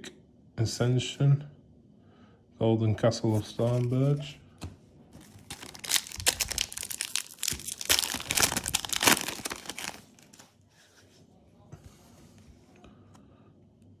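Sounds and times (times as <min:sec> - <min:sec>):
foil wrapper crinkling and tearing: 0:05.2 - 0:10.6.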